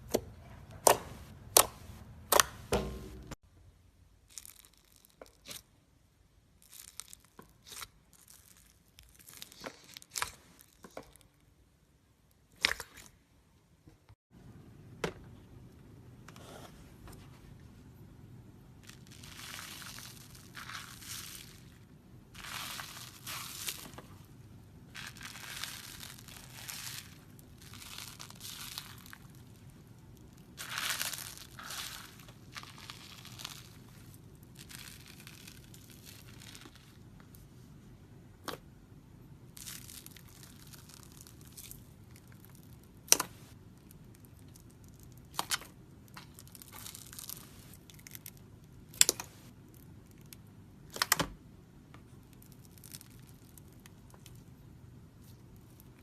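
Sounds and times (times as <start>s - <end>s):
slime stretched and squished: 4.2s - 11.6s, 18.8s - 37.5s, 39.4s - 51.4s, 52.1s - 56.0s
crackly tearing sounds: 24.9s - 37.0s, 39.6s - 50.3s.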